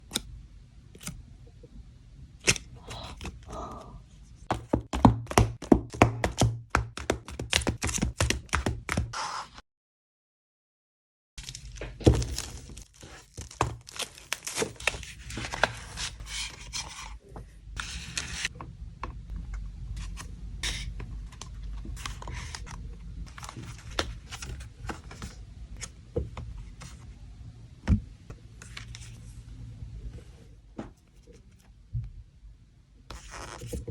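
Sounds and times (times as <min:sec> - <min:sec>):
taps and knocks on cardboard: 0:04.5 - 0:09.1
plastic wrap crinkling: 0:11.4 - 0:16.2.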